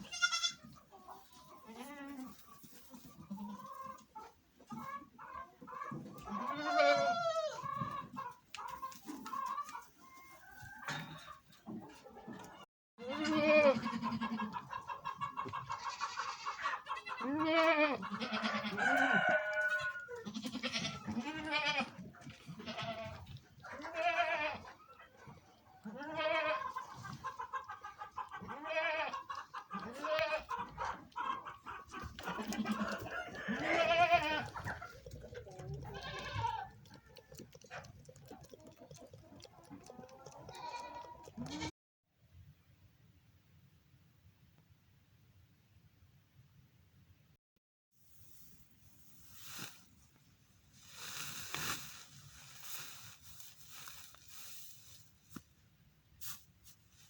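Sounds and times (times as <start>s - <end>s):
goats bleating: 0.0s - 0.7s, 6.2s - 7.8s, 13.0s - 14.6s, 15.7s - 24.8s, 25.8s - 26.8s, 28.4s - 30.6s, 32.2s - 37.3s, 39.8s - 41.7s
chickens clucking: 0.6s - 12.7s, 13.8s - 20.2s, 20.8s - 41.7s.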